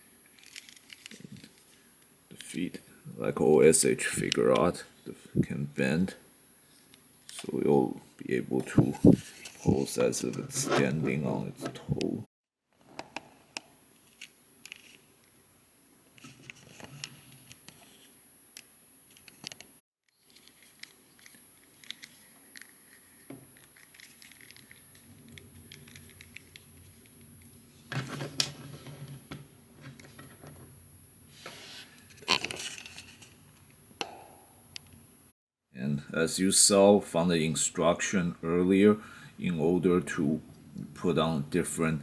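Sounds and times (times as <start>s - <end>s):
handling plastic action figure: 0.4s - 1.7s, 20.2s - 26.9s.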